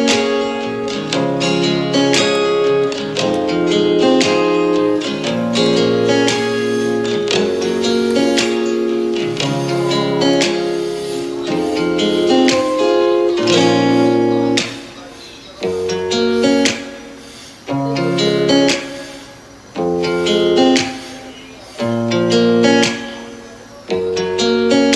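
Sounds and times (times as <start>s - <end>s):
acoustic guitar strumming chords: 0.0s - 15.0s.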